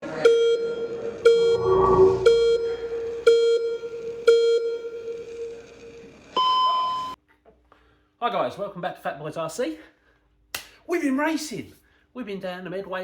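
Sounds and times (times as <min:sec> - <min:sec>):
low buzzy electronic beeps: 0:01.3 - 0:03.2
noisy whoosh: 0:01.3 - 0:03.2.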